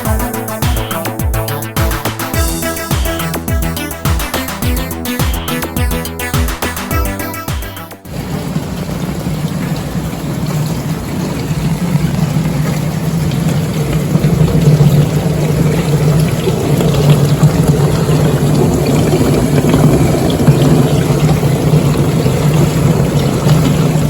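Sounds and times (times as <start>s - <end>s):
water rushing and splashing: 7.9s - 24.0s.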